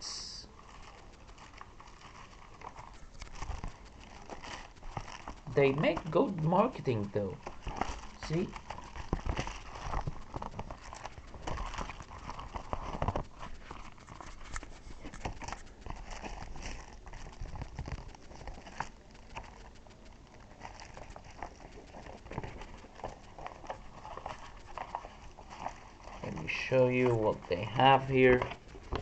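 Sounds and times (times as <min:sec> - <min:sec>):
paper rustling: 0:00.5 - 0:29.0.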